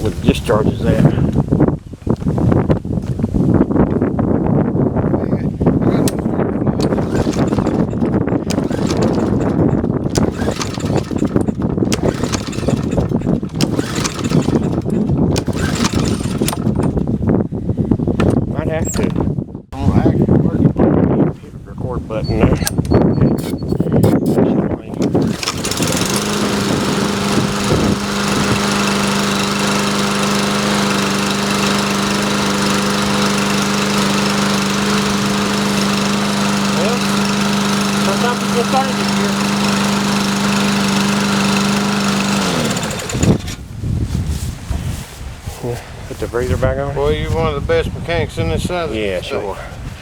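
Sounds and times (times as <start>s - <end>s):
lawn mower engine running: 5.9s - 17.4s, 22.6s - 43.7s.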